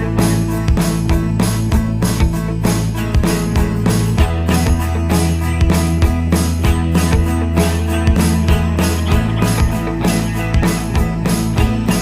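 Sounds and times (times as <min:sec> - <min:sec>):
guitar rock music with drums: 0:00.0 - 0:12.0.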